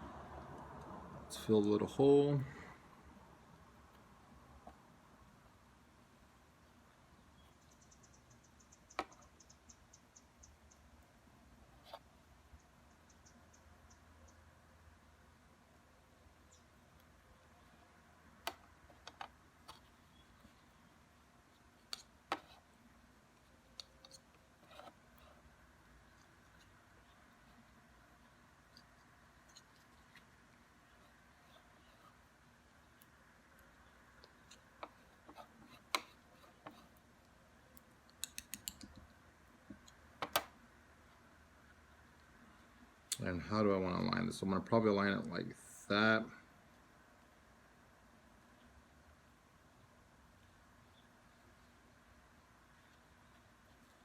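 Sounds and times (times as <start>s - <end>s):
plastic parts clicking and tapping: 39.7s - 40.5s.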